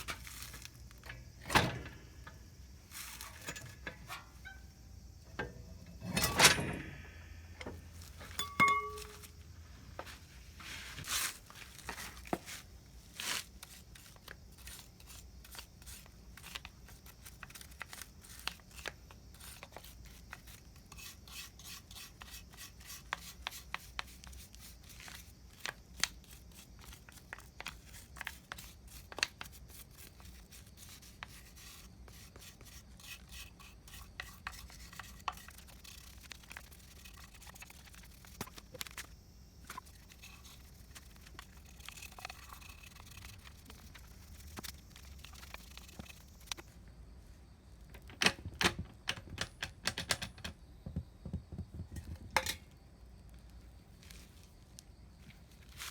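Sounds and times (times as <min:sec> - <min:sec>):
parts rubbing and scraping: 0:00.0 - 0:12.7, 0:31.3 - 0:46.7
hand tools clicking and tapping: 0:07.6 - 0:09.4, 0:48.0 - 0:52.6.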